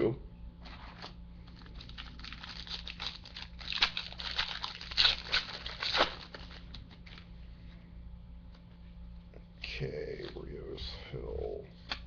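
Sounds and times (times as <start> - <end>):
wrapper crinkling and tearing: 0.8 - 7.2.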